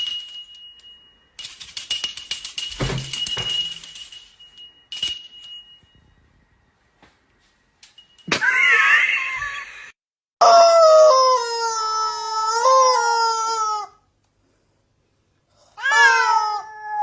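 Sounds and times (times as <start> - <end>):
cat yowling: 15.8 - 17.0.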